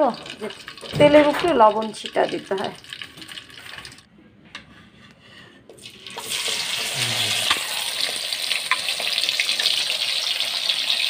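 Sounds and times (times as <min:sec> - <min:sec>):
oil sizzling in a pan: 0:05.9 - 0:11.0.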